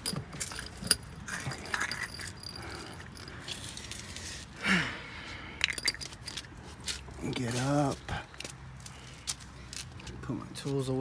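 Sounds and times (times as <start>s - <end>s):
metal hand tools clinking: 0.0s - 4.2s, 5.6s - 6.5s.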